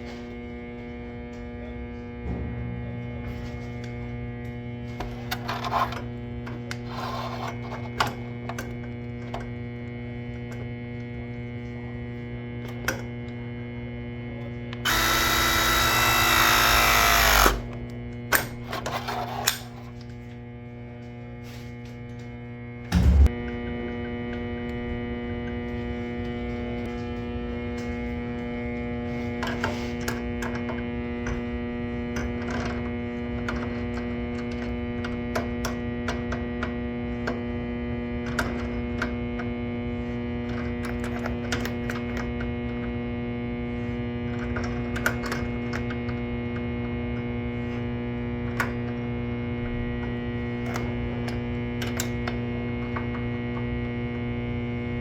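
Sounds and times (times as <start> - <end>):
electrical buzz: 14.8 - 17.9, 22.8 - 28.8.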